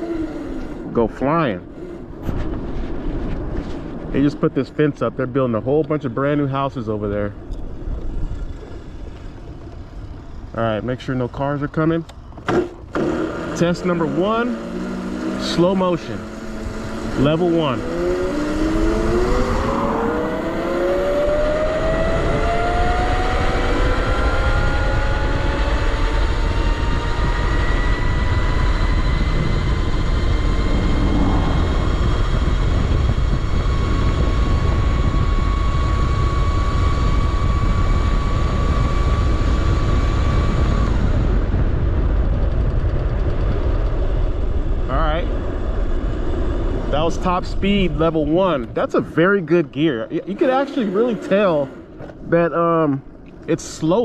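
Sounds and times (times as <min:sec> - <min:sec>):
electric motorcycle motor whining: 0:00.0 - 0:02.7, 0:11.6 - 0:44.8, 0:50.2 - 0:54.0
wind rumble on microphone: 0:00.0 - 0:12.4, 0:16.1 - 0:50.1.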